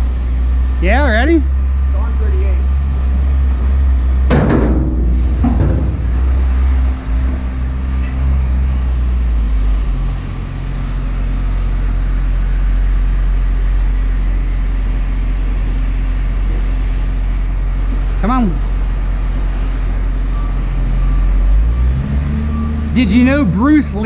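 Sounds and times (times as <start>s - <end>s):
vehicle engine and road drone: 0.0s - 24.0s
sharp knock: 4.3s - 7.0s.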